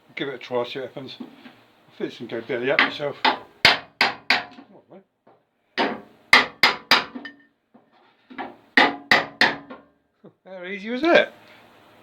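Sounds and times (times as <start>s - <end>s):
hammer blows on sheet steel: 5.8s - 7.5s.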